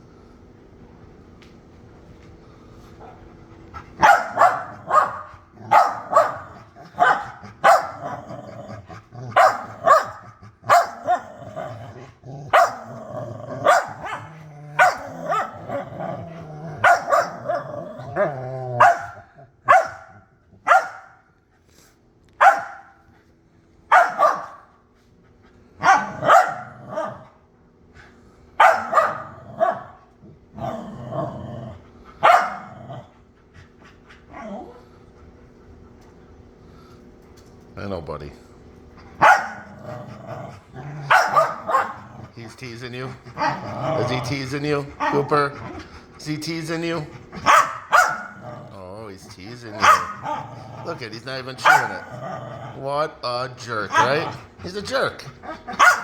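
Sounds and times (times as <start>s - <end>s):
dog growling: 3.0s - 19.6s, 25.8s - 27.4s, 28.8s - 33.4s, 34.3s - 35.0s, 39.1s - 56.0s
small dog barking: 4.0s - 8.2s, 9.4s - 11.3s, 12.5s - 12.9s, 13.6s - 15.8s, 16.8s - 17.6s, 18.8s - 21.2s, 22.4s - 22.9s, 23.9s - 24.7s, 25.8s - 27.2s, 28.6s - 30.0s, 32.2s - 32.7s, 39.2s - 39.7s, 41.0s - 42.2s, 47.4s - 48.6s, 49.8s - 50.6s, 51.6s - 52.0s, 53.9s - 54.3s, 55.5s - 56.0s.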